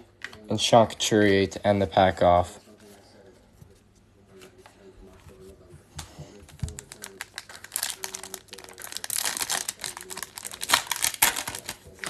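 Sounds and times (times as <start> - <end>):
foil wrapper crinkling: 6.5 - 12.0.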